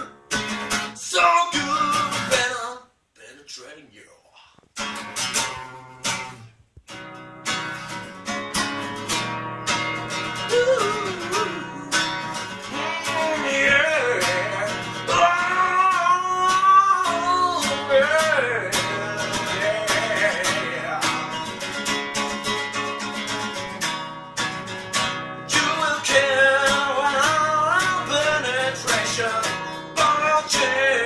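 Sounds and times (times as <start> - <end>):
acoustic guitar strummed: 0.0 - 2.8, 4.8 - 31.0
person singing: 1.0 - 2.8, 10.2 - 21.4, 25.5 - 31.0.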